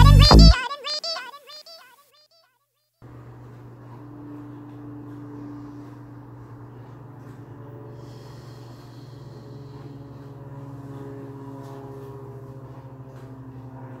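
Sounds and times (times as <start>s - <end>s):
held tones: 0.0s - 0.6s
low mechanical hum: 3.0s - 14.0s.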